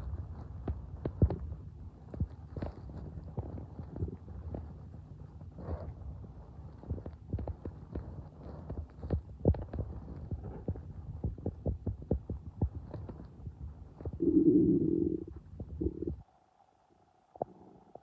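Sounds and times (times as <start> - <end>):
stomach rumbling and gurgling: 0.0 - 16.3, 17.3 - 18.0.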